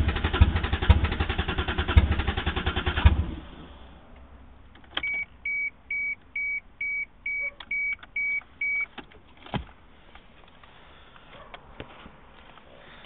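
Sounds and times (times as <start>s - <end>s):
short electronic beeps: 5.0s - 8.9s.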